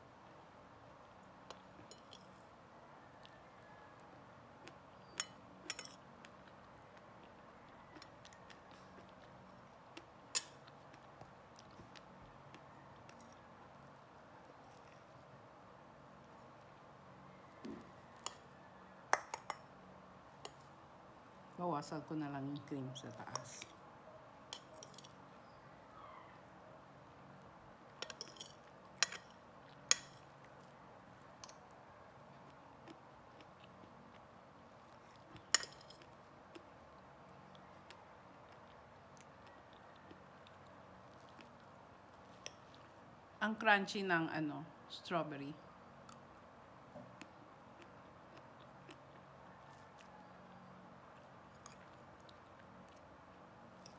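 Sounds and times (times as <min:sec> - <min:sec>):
cutlery clinking against a dish: 0:05.2 - 0:06.0, 0:19.1 - 0:19.6, 0:28.0 - 0:30.2, 0:35.5 - 0:36.0.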